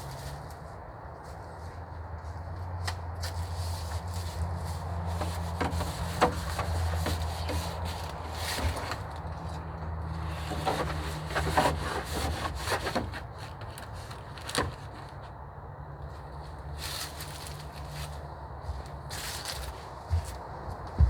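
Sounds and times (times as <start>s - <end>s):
wooden sticks scraping and knocking: 2.4s - 15.4s.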